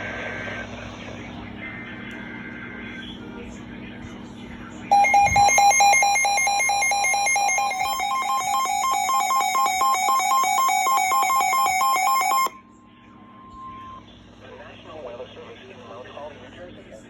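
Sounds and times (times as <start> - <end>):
electronic alert beeping: 4.9 - 12.6.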